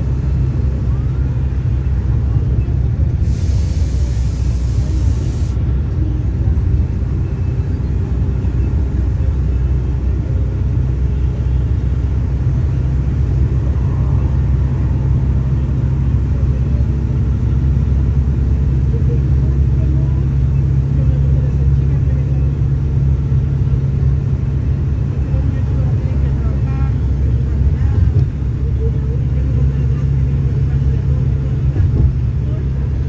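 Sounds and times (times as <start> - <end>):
diesel engine drone: 0.0 - 33.0
brief hiss: 3.2 - 5.6.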